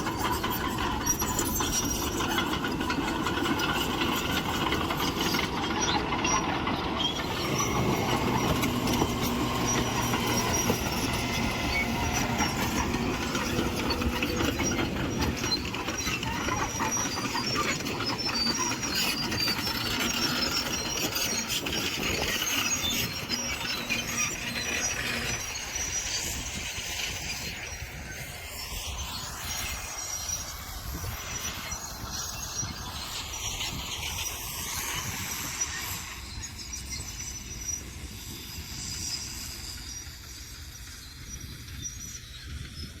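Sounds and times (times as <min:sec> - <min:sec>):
diesel engine running: 0:00.0 - 0:25.9
steel tracks clattering and squeaking: 0:00.0 - 0:43.0.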